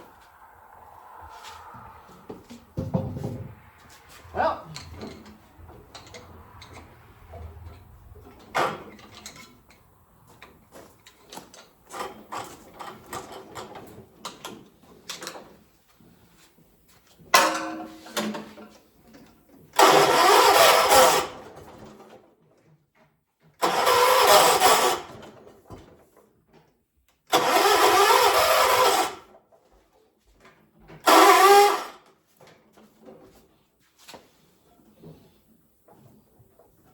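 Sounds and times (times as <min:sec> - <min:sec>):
tractor engine cranking on starter: 0:04.8 - 0:15.8, 0:18.2 - 0:22.6, 0:23.5 - 0:26.2, 0:27.3 - 0:29.4, 0:30.8 - 0:32.1.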